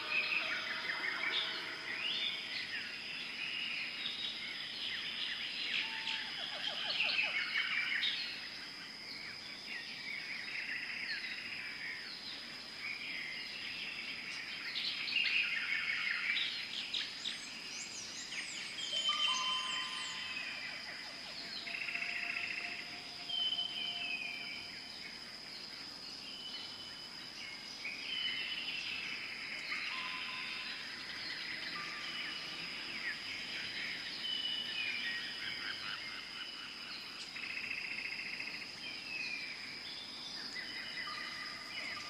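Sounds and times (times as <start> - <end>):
birds whistling and trilling: 16.4 - 20.7
high-pitched insect drone: 18.8 - 25.4, 29.0 - 34.2.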